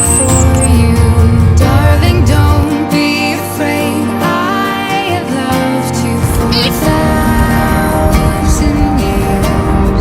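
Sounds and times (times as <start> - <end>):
person singing: 0.0 - 10.0
plucked guitar: 0.0 - 10.0.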